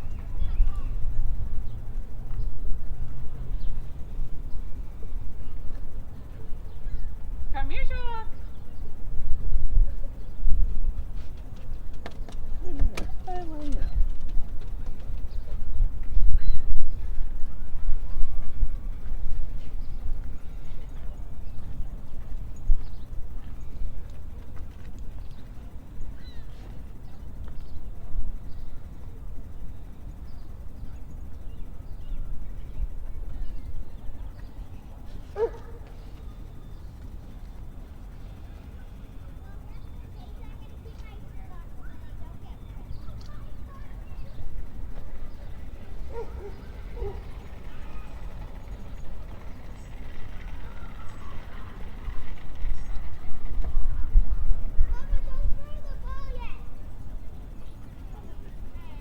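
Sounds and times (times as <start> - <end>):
city noise: 0.0 - 59.0
steady low rumble: 0.0 - 59.0
faint bird chirps: 16.2 - 24.0, 25.1 - 41.3
dogs calling: 35.4 - 36.0, 45.9 - 48.9
wind rumble: 43.6 - 58.8
dog yelp: 46.1 - 47.2.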